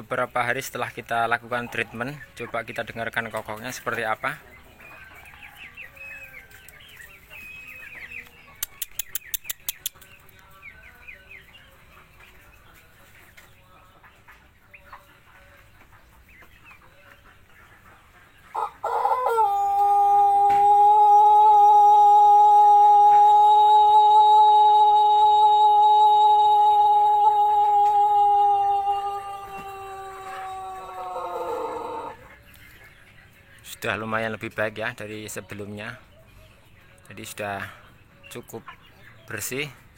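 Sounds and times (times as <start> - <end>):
faint clucking calls: 0.0 - 11.4, 12.0 - 39.9
rooster crowing: 18.6 - 32.2.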